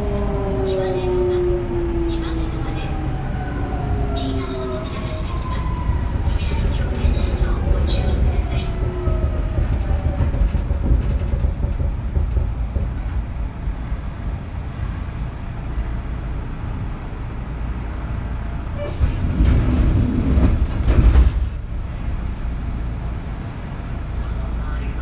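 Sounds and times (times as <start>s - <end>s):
train wheels rumbling on rail: 0.0s - 25.0s.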